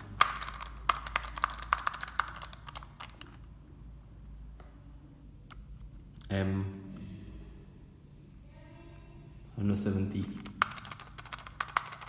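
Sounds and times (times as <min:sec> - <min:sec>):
computer mouse buttons clicking: 0:00.0 - 0:03.4, 0:10.4 - 0:12.0.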